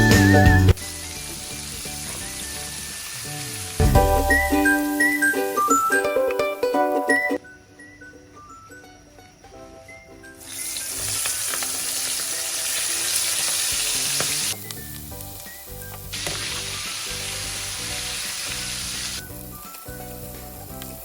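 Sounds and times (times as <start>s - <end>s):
prawns sizzling in hot oil: 0.0s - 6.0s, 10.4s - 21.0s.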